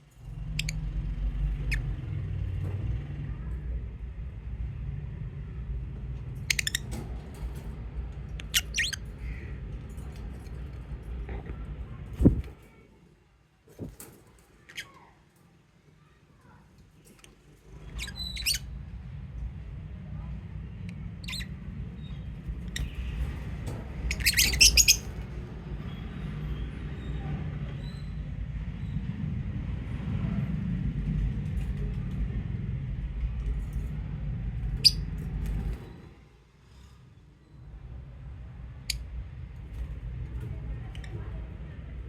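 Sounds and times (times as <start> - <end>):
low rumble: 0.0 - 12.6, 17.6 - 36.1
lovebirds chirping and squawking: 0.3 - 2.0, 6.3 - 7.2, 8.4 - 10.6, 17.2 - 18.8, 21.2 - 27.2, 34.7 - 35.8
lovebirds chirping: 8.4 - 9.5, 17.8 - 18.7, 21.2 - 25.3.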